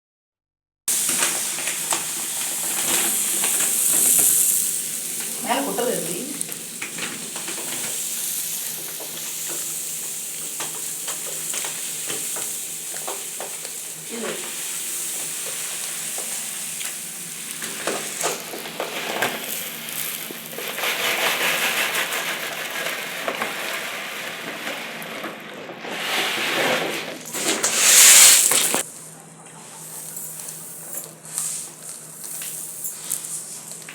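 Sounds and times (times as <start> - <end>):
rice grains crunching: 0.9 - 10.1, 14.6 - 24.5, 27.2 - 28.8.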